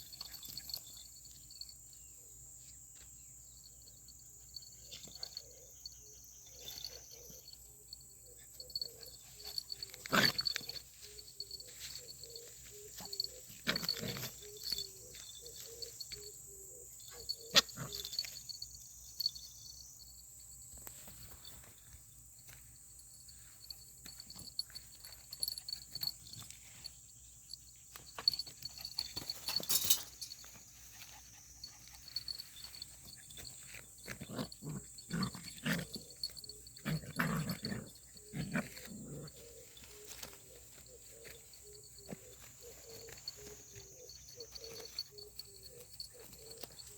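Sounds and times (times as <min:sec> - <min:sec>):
dogs growling: 0:08.6 - 0:10.8, 0:13.0 - 0:14.8, 0:17.1 - 0:18.4, 0:33.0 - 0:39.9.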